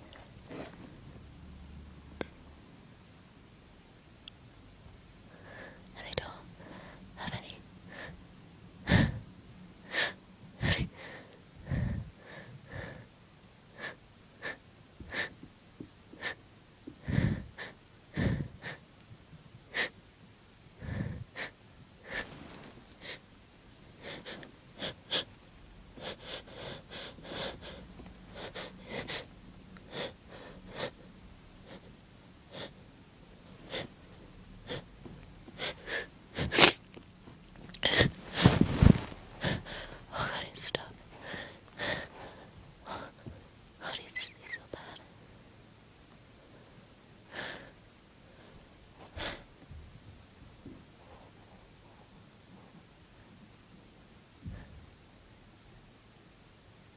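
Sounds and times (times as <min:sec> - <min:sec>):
hitching breaths: 0:09.9 - 0:13.1, 0:16.2 - 0:18.8, 0:20.8 - 0:23.2, 0:26.0 - 0:32.8, 0:37.6 - 0:43.5
person sniffling: 0:35.6 - 0:36.8.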